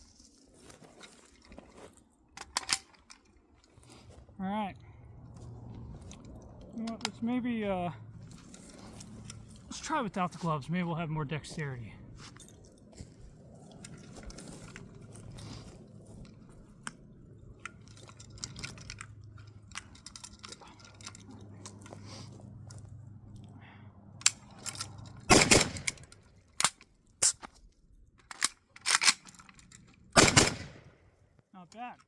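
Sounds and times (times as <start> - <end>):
handling clicks and rustling: 0.0 - 32.0
rifle shots: 25.3 - 26.2, 30.2 - 31.0.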